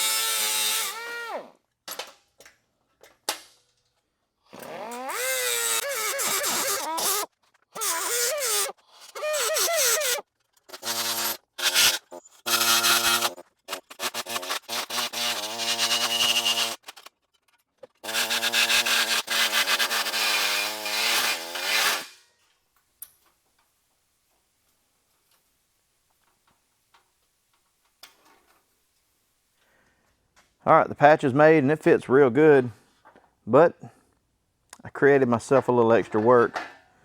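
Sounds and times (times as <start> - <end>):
cutoff wheel cutting sheet metal: 0.0 - 1.5, 4.5 - 17.0, 17.9 - 22.2.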